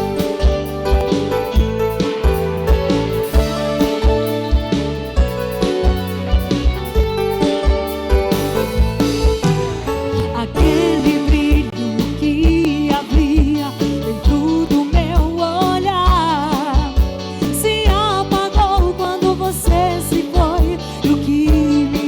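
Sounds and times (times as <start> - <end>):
lead voice singing with vibrato: 10.2 - 15.9.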